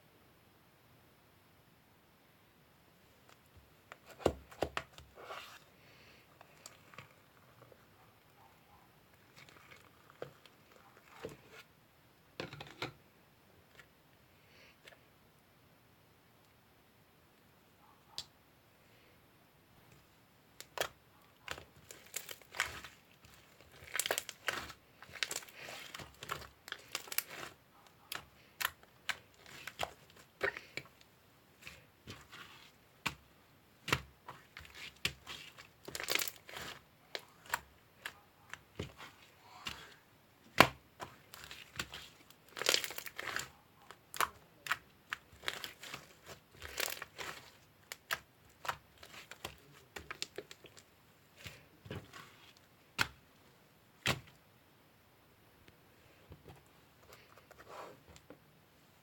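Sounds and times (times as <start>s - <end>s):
crinkling and rustling: 3.2s - 11.7s, 19.9s - 54.4s, 56.1s - 58.4s.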